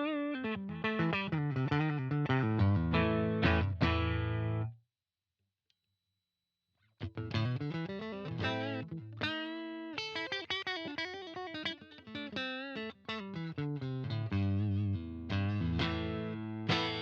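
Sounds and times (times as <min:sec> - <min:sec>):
electric guitar lead line: 0:00.0 - 0:04.8, 0:07.0 - 0:17.0.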